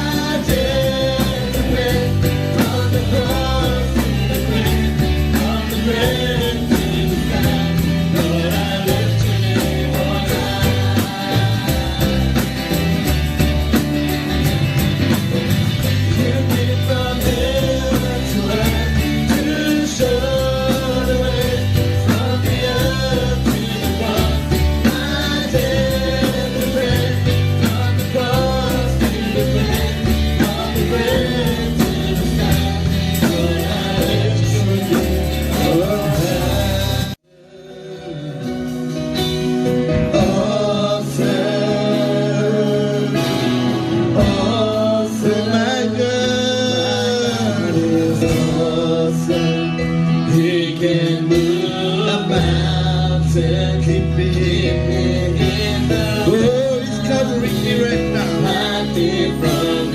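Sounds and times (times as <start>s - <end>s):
steady drum beat: 0.0s - 37.2s
band playing: 0.0s - 59.9s
gospel singing: 0.0s - 59.9s.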